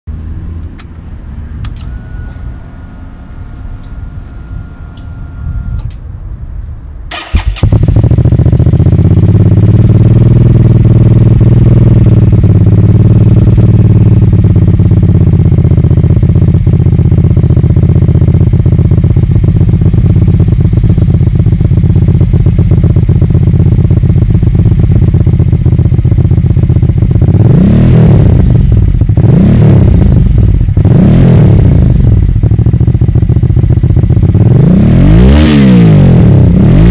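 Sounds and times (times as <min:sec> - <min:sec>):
motorcycle engine revving: 0:00.2 - 0:05.8, 0:07.1 - 0:36.9
motorcycle engine idling: 0:07.1 - 0:27.5, 0:28.4 - 0:29.3, 0:30.0 - 0:31.0, 0:31.7 - 0:34.5.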